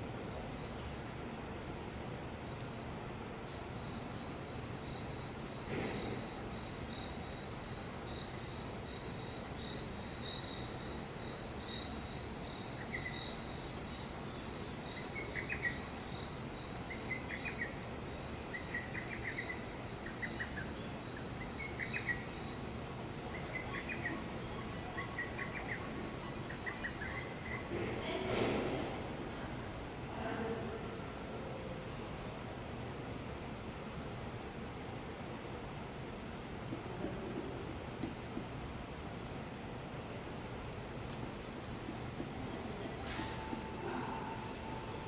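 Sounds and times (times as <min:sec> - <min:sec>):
insects trilling: 0:02.0 - 0:27.8
lower chirping call: 0:02.6 - 0:27.7.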